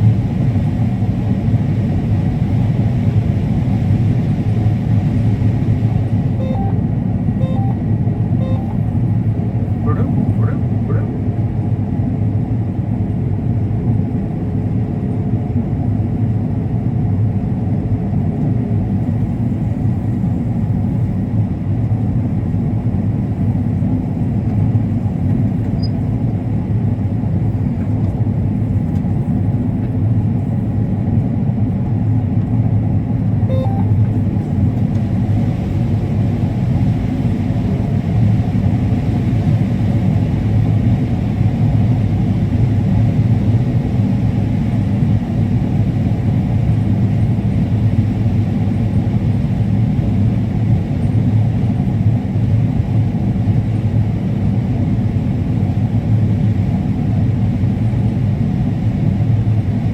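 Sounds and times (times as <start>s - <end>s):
combine harvester rumbling: 4.6s - 11.5s
faint steady hum: 5.3s - 11.2s, 33.5s - 34.6s.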